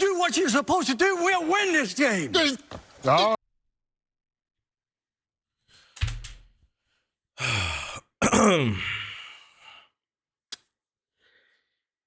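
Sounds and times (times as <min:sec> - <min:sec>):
man sighing heavily: 0:07.4 - 0:09.8.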